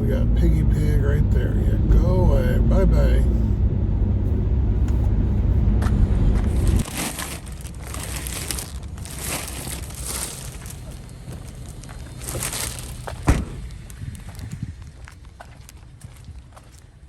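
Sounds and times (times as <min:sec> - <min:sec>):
car engine rumble: 0:00.0 - 0:17.0
plastic bags crinkling: 0:06.6 - 0:16.8.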